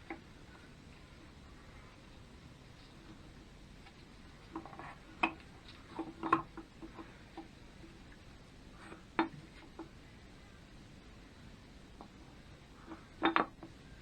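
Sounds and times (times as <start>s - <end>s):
knocks and clicks of tools: 12.9s - 13.8s.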